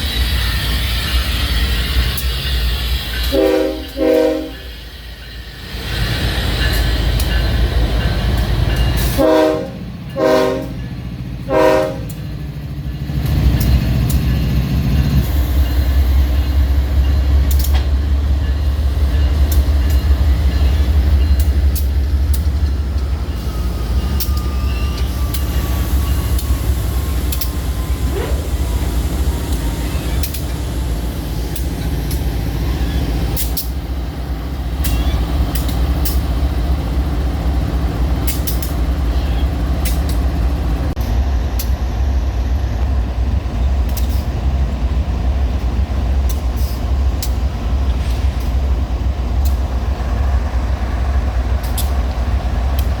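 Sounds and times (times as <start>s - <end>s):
diesel locomotive engine rumbling: 0.0s - 53.0s
sharp clicks: 26.3s - 27.7s, 51.6s - 52.1s.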